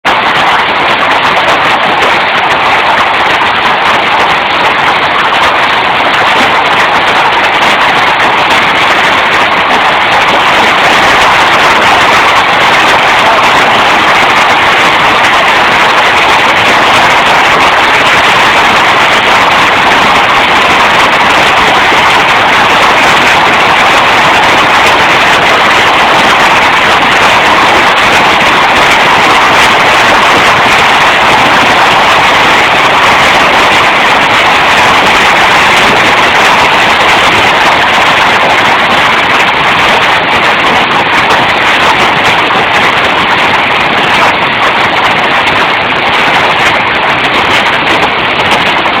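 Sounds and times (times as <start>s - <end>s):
heavy hail clattering: 0.1s - 49.0s.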